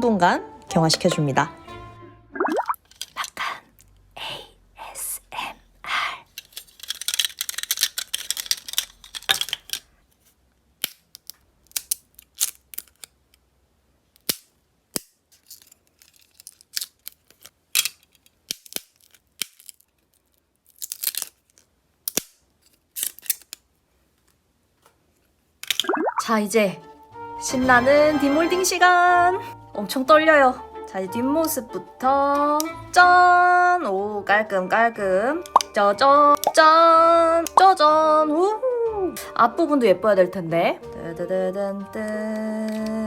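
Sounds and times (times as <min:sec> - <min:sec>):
crinkly rustling: 0:06.3 - 0:10.4, 0:15.4 - 0:18.4.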